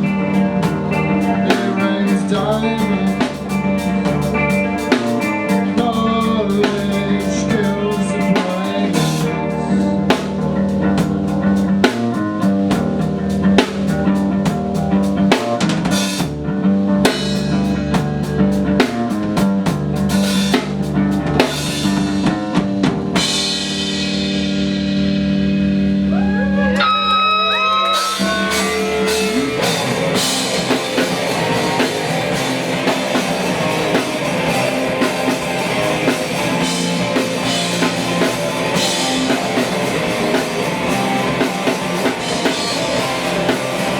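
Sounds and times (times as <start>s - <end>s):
sliding guitar notes: 0.0s - 11.0s, 25.6s - 43.9s
drum kit hits: 0.0s - 16.4s, 17.0s - 26.0s, 28.0s - 43.9s
band playing: 0.0s - 43.9s.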